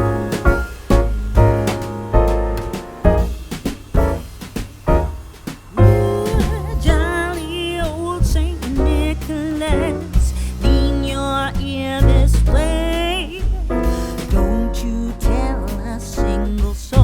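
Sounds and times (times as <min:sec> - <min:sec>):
song with vibrato singing: 0:05.8 - 0:17.0.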